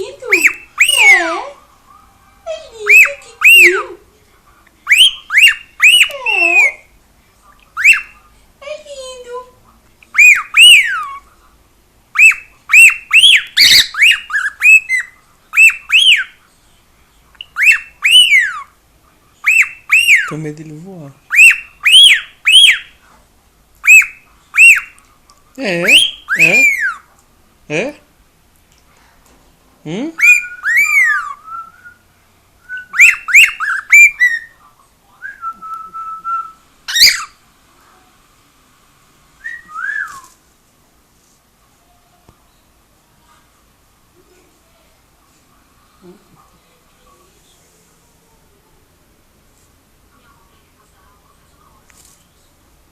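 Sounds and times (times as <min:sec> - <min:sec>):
cockatiel whistling: 0:00.3 - 0:01.2, 0:04.9 - 0:06.9, 0:07.8 - 0:08.2, 0:10.1 - 0:11.2, 0:12.2 - 0:16.4, 0:17.4 - 0:18.7, 0:19.4 - 0:20.3, 0:21.3 - 0:22.9, 0:23.8 - 0:25.0, 0:25.8 - 0:27.0, 0:30.2 - 0:32.0, 0:32.6 - 0:34.6, 0:35.2 - 0:37.4, 0:39.4 - 0:40.4
cockatiel squawk: 0:04.9 - 0:06.8, 0:07.8 - 0:08.2, 0:10.2 - 0:11.2, 0:12.2 - 0:16.4, 0:17.4 - 0:18.7, 0:19.4 - 0:20.3, 0:21.3 - 0:22.9, 0:23.8 - 0:25.0, 0:25.8 - 0:27.1, 0:30.2 - 0:31.4, 0:32.9 - 0:34.5, 0:36.9 - 0:37.4.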